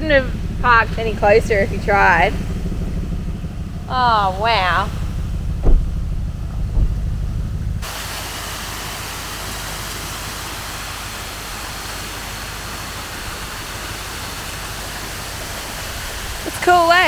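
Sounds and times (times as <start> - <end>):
thumps: 0.0 - 7.8
vehicle engine idling: 0.0 - 17.0
waterfall rushing: 7.8 - 17.0.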